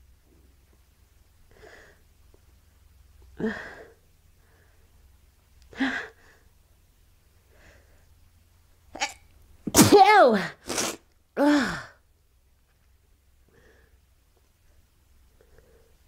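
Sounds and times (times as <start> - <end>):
woman breathing: 1.5 - 2.1, 3.4 - 5.1, 5.7 - 6.6, 7.4 - 8.2, 13.4 - 16.0.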